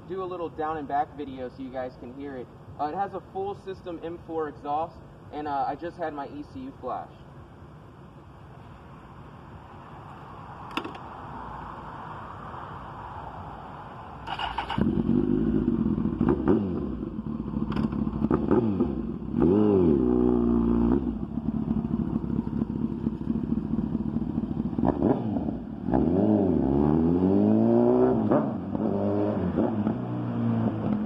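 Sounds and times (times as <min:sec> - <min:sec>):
motorcycle engine accelerating: 0:14.2 - 0:31.0
exhaust crackling pops: 0:17.5 - 0:19.0.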